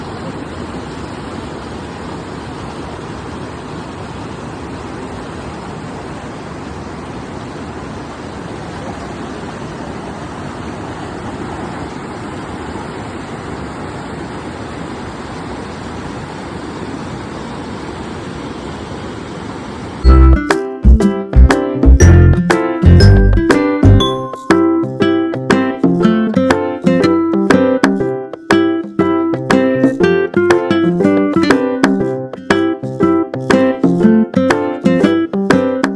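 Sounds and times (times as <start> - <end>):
river water rushing: 0.0 - 20.0
loud music: 20.0 - 35.9.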